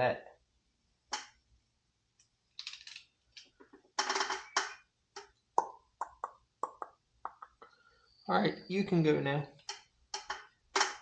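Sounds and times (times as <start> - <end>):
metal terminals and tools clicking: 2.6 - 4.8.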